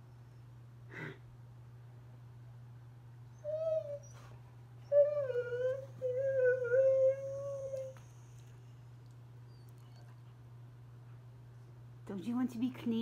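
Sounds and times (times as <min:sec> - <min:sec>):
dog whining and howling: 0:03.3 - 0:08.4.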